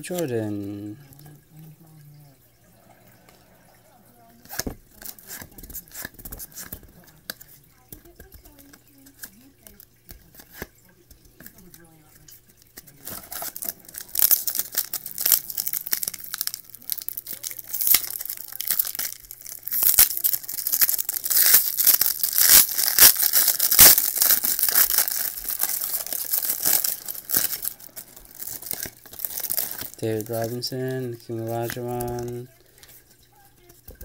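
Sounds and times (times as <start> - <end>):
wrapper tearing and crinkling: 4.4 - 6.8, 12.9 - 32.9.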